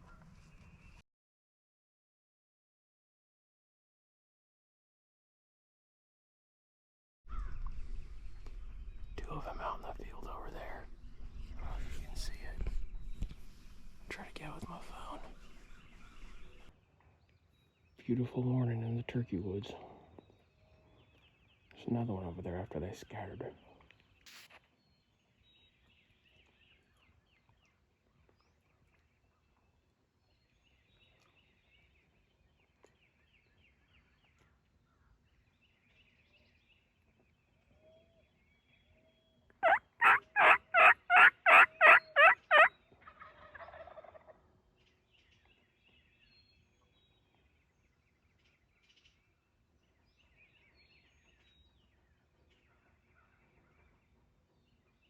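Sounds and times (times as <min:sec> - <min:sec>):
faint songbird chirps: 0:07.3 - 0:55.0
wild turkey calling: 0:39.6 - 0:44.5.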